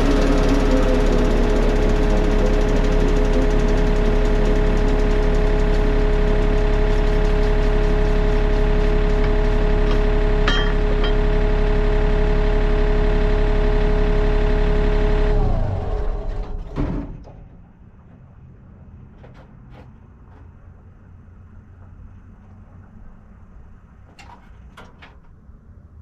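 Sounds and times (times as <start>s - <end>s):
steady whine: 0.0s - 15.3s
diesel engine running: 0.0s - 24.7s.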